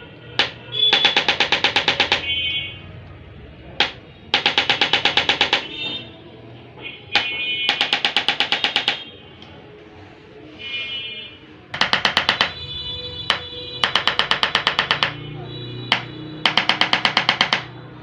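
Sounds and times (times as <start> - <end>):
rapid clicks of adjusting instrument: 0.4 - 2.5, 3.8 - 6.0, 7.2 - 9.5, 11.8 - 12.6, 13.3 - 15.2, 15.9 - 17.7.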